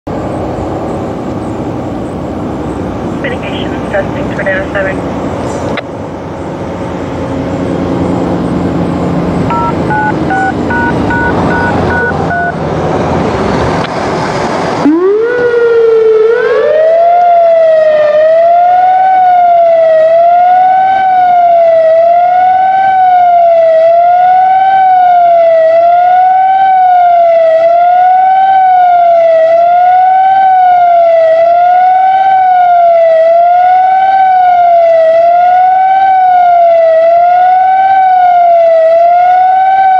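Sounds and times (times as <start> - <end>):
loud rushing noise: 0.2 - 15.0
warning siren wailing: 6.6 - 13.2, 14.7 - 39.9
short beeps: 9.5 - 12.6.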